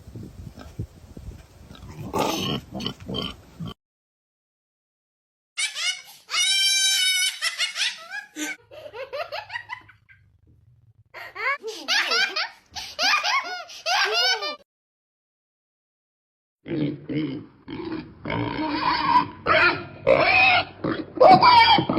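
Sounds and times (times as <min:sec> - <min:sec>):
high-pitched squealing laughter: 0:05.6 - 0:10.2, 0:11.2 - 0:14.6, 0:18.8 - 0:21.9.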